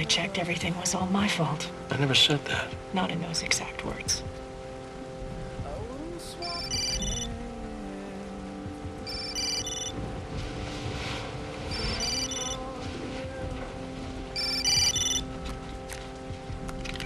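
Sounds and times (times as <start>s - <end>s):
soft background music: 0.0s - 17.0s
phone ringtone chiming: 6.5s - 7.3s, 9.0s - 10.0s, 11.7s - 12.6s, 14.4s - 15.2s.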